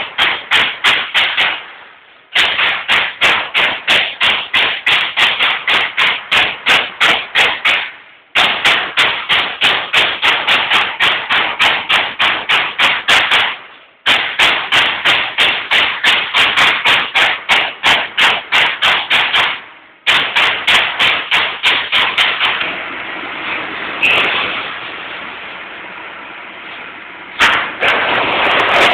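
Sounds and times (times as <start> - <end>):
punch press punching sheet metal: 0.0 - 22.9, 27.4 - 28.9
steady machine hum: 19.6 - 28.9.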